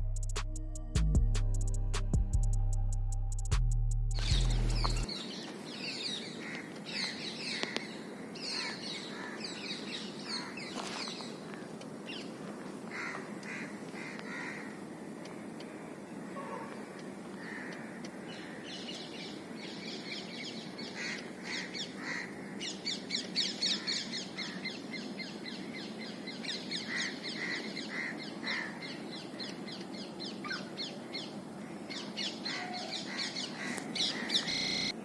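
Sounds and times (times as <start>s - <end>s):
low background rumble: 0.0s - 5.1s
birds chirping: 4.2s - 35.0s
lower bird calls: 4.2s - 35.0s.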